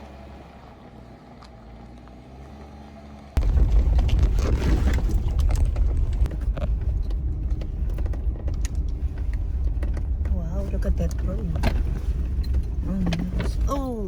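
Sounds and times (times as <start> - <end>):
vehicle low rumble: 0.0 - 14.0
knocks and rattles from bumps: 3.4 - 14.0.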